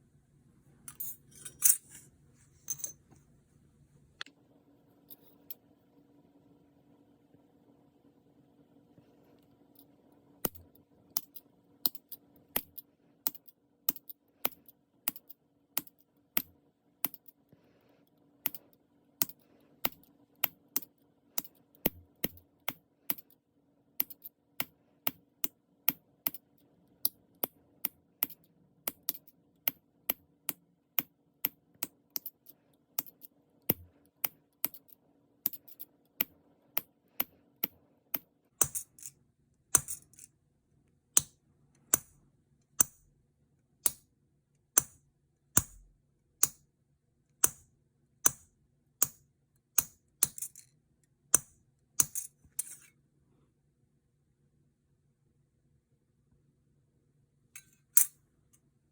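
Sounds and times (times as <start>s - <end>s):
faint steady hum: 0.0s - 58.9s
small hammer tapping metal: 35.5s - 39.1s, 39.8s - 40.3s, 42.8s - 43.0s, 43.8s - 44.1s, 44.8s - 45.0s, 45.6s - 46.7s, 47.4s - 50.7s, 51.3s - 52.9s.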